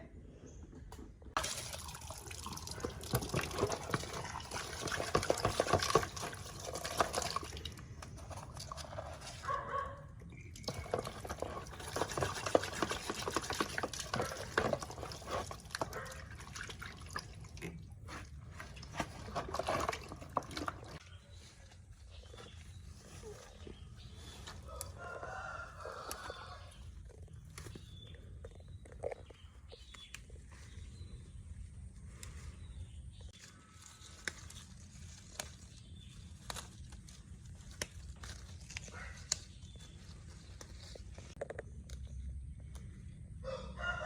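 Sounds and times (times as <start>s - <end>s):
water splashing and dripping: 1.4s - 8.8s, 10.5s - 17.9s.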